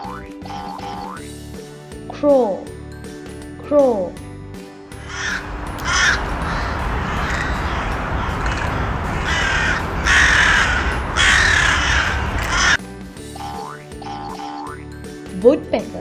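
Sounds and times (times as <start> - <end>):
crow cawing: 5.0 - 12.8.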